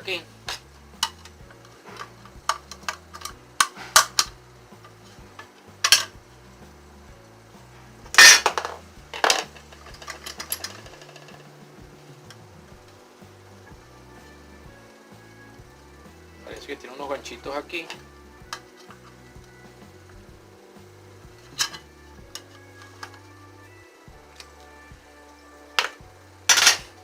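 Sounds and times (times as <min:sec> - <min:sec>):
parts clattering: 0:00.0 - 0:06.4, 0:07.7 - 0:13.8, 0:16.4 - 0:24.7, 0:25.6 - 0:27.0
plastic parts clicking and knocking: 0:00.5 - 0:06.2, 0:08.2 - 0:11.5, 0:25.8 - 0:27.0.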